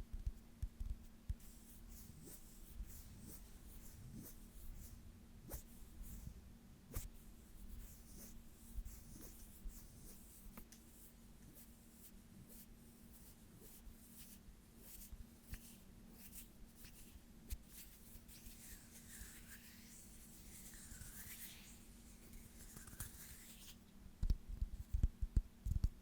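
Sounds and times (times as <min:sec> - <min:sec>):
faint steady hum: 0:00.0 - 0:26.0
skin brushing and rubbing: 0:01.4 - 0:23.8
light clicks and taps: 0:24.2 - 0:26.0.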